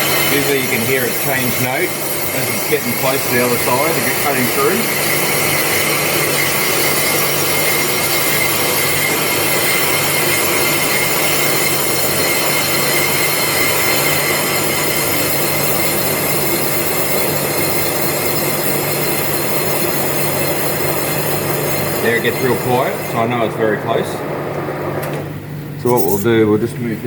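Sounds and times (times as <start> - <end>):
high ringing tone: 0.0 - 25.3
lathe tool cutting squeal: 0.0 - 26.2.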